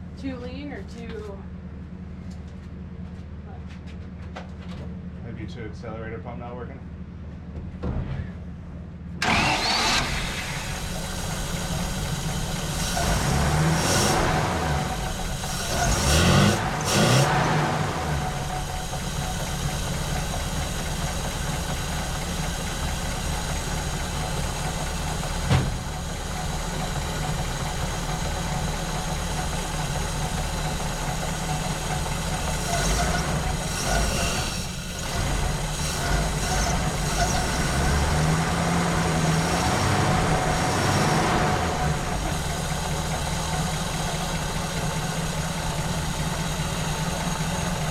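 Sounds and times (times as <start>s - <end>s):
engine idling: 0.0s - 7.6s, 8.2s - 47.9s
car engine starting and revving: 9.2s - 47.9s
engine pop: 14.1s - 33.7s.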